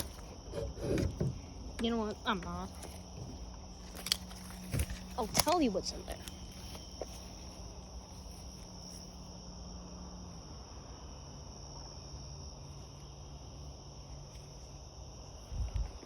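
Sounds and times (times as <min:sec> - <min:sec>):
crickets chirping: 0:00.0 - 0:16.0.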